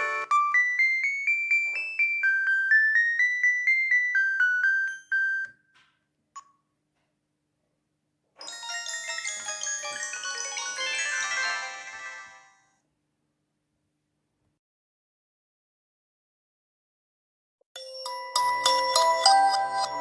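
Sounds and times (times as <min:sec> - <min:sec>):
electronic ringtone melody: 0:00.0 - 0:05.6, 0:08.4 - 0:12.7, 0:17.8 - 0:20.0
polyphonic ringtone: 0:00.0 - 0:05.6, 0:08.4 - 0:12.7, 0:17.8 - 0:20.0.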